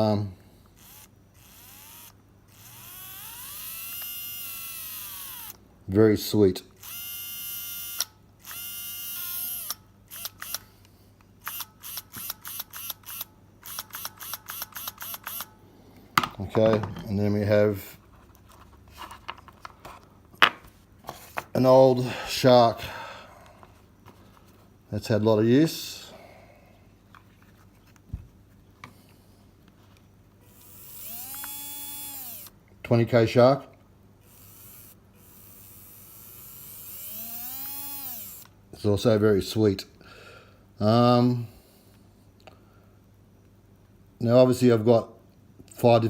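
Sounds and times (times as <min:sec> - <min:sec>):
small electric motor whining: 0:00.7 - 0:05.6, 0:06.8 - 0:10.6, 0:11.4 - 0:15.6, 0:30.4 - 0:32.6, 0:34.2 - 0:38.5.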